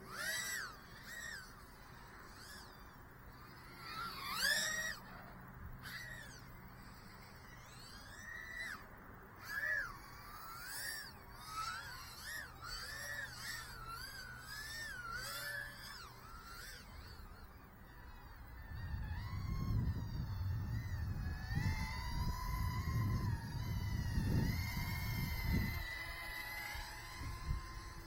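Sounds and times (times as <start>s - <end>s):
drone motors whining: 0.0s - 28.0s.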